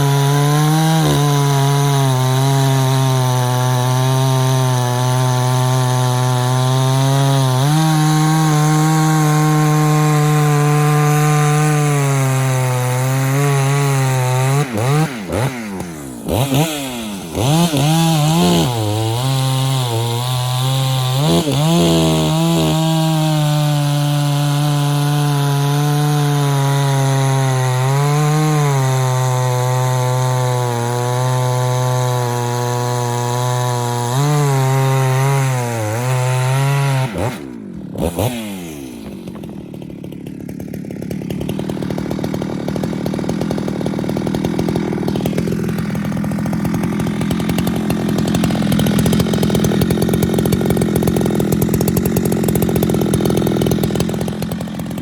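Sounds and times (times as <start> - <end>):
chainsaw running at high revs: 0.0 - 55.0.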